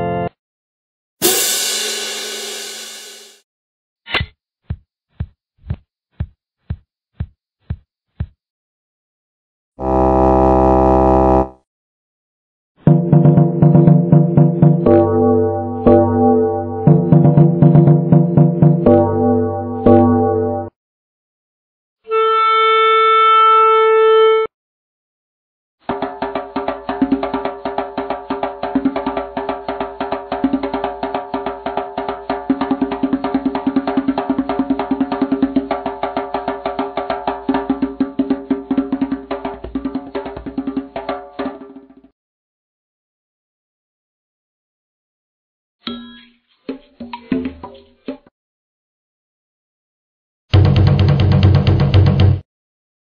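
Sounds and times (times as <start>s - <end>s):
wood block percussion: 25.9s - 41.8s, 45.9s - 48.3s.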